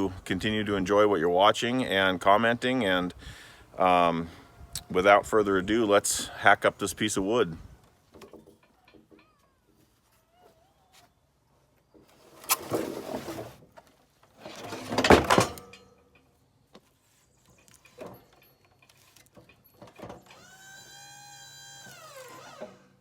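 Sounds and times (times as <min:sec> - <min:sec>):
sawmill motor whine: 0:20.2 - 0:23.0.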